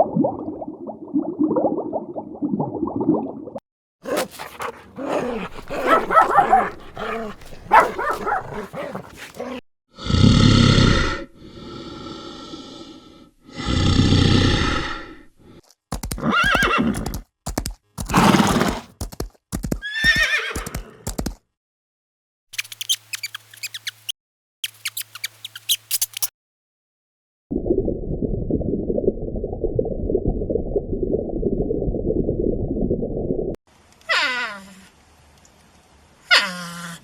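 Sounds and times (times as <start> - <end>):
horses neighing: 4.1 - 9.6, 16.0 - 17.2, 18.0 - 18.9, 19.8 - 21.2.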